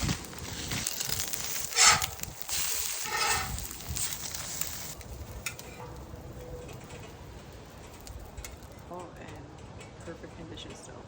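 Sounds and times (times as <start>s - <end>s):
eggs sizzling on a griddle: 0.0s - 8.8s
wind rumbling on microphone: 0.0s - 11.0s.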